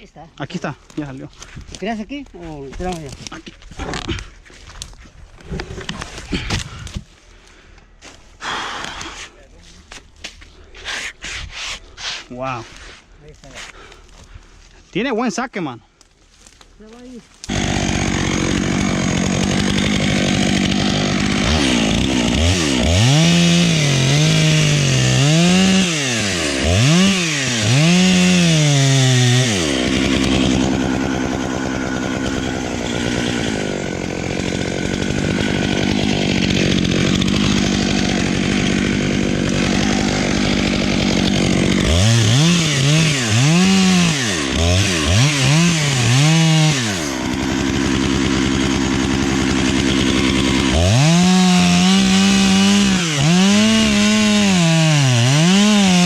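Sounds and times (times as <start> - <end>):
chainsaw engine revving: 17.4 - 56.0.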